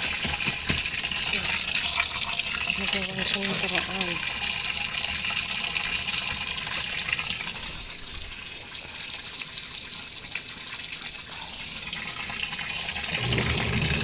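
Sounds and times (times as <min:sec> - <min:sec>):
water gushing into washing machine: 0:00.0 - 0:14.0.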